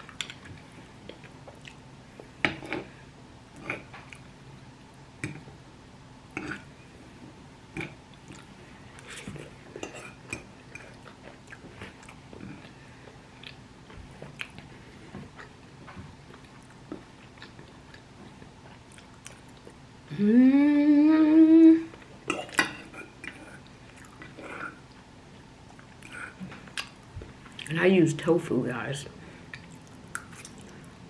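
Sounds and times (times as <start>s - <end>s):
person chewing: 0.0s - 2.9s, 7.8s - 19.8s, 21.9s - 27.7s, 29.4s - 31.0s
closed-mouth hum: 6.4s - 28.0s.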